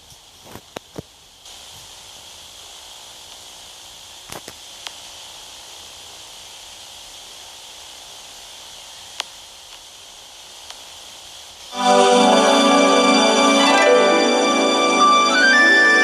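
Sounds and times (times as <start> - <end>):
tape hiss: 0.0 - 16.0.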